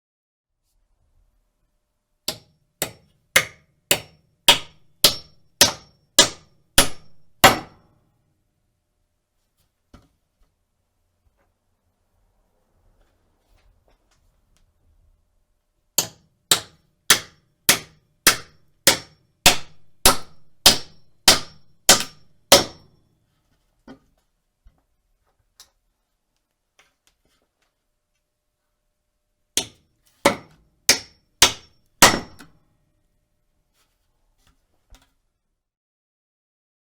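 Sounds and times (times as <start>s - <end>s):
hammer striking a nail: 2.3s - 7.9s, 16.0s - 23.0s, 29.6s - 32.6s.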